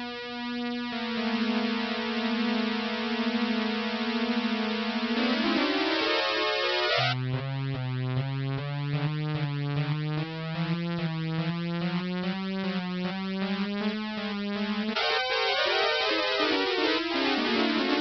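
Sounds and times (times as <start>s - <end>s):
synthesizer music: 5.1s - 7.2s.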